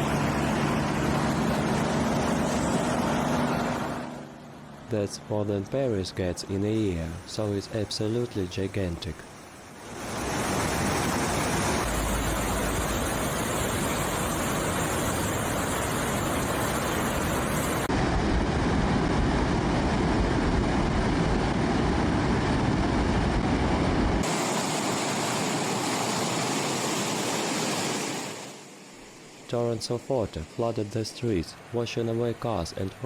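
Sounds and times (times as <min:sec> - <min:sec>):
rushing floodwater roar: 0:04.9 - 0:17.9, 0:24.2 - 0:33.0.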